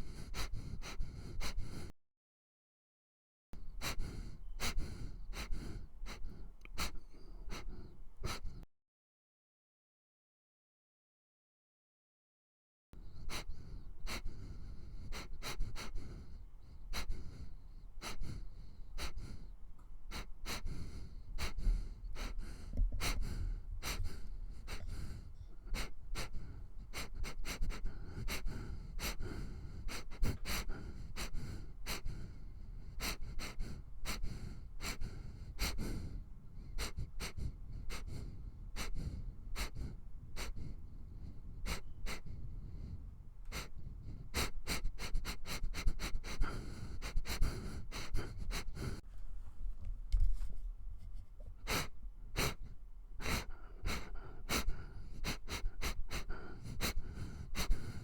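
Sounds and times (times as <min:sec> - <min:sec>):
dog sniffing: 0:03.8 - 0:08.6, 0:13.0 - 0:19.5, 0:20.1 - 0:49.0, 0:51.1 - 0:58.0.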